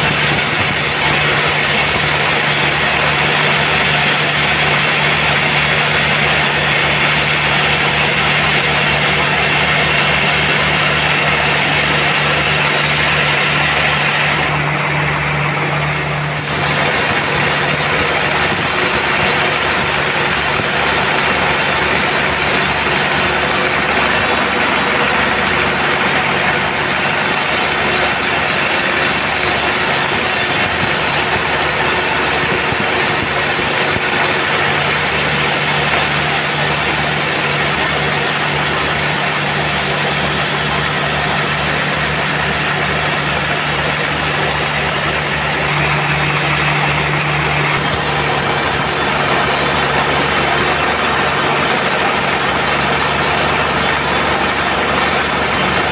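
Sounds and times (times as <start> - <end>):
saw blade cutting log hiss: 0.0 - 3.1, 16.4 - 34.6, 47.8 - 55.9
sawmill engine drone: 0.0 - 55.9.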